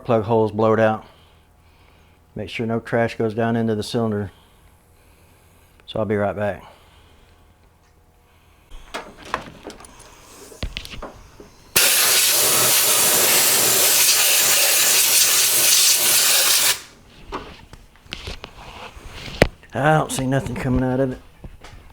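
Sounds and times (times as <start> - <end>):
handling knocks and clicks: 8.7 - 11.6
compressed air hissing: 9.9 - 17.0.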